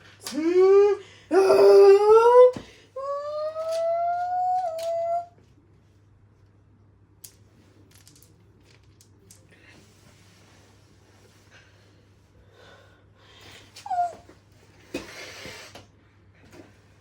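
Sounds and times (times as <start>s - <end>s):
dog whining: 0.4s - 5.4s, 13.8s - 14.3s.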